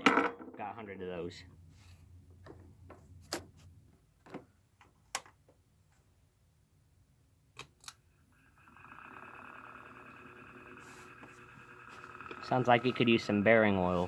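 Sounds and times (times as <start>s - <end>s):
ceiling fan motor humming: 8.1s - 14.0s.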